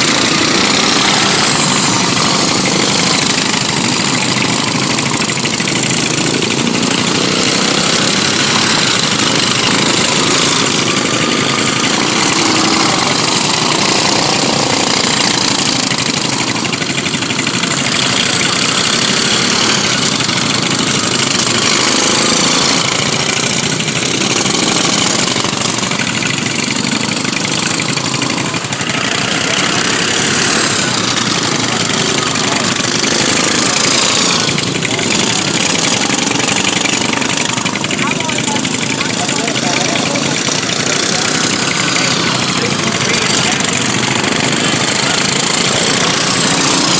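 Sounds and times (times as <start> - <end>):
lawn mower engines revving: 0.0 - 46.9.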